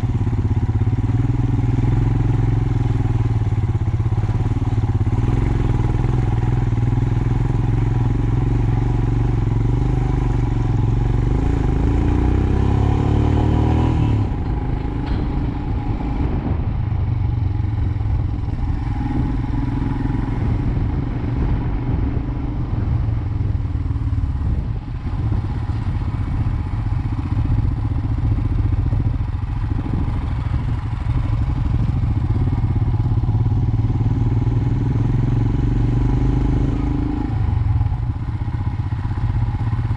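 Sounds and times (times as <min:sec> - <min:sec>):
motorcycle engine running: 0:00.0 - 0:39.9
bike clattering over bumps: 0:14.2 - 0:16.7.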